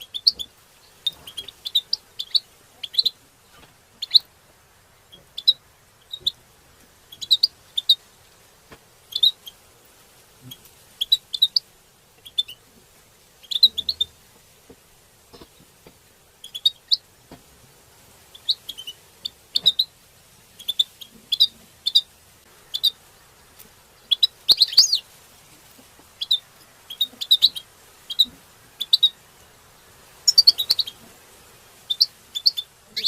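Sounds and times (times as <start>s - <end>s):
finches chirping: 0.0s - 8.0s, 9.0s - 9.6s, 10.4s - 12.7s, 13.4s - 14.2s, 16.4s - 17.1s, 18.2s - 19.9s, 20.6s - 29.2s, 30.2s - 31.1s, 31.8s - 33.0s.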